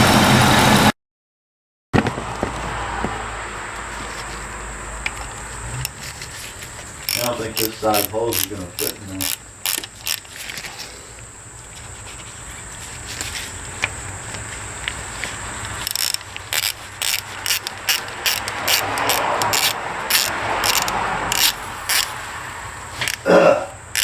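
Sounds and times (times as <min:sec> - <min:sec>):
hand tools clicking and clattering: 0:05.0 - 0:11.3, 0:13.2 - 0:24.0.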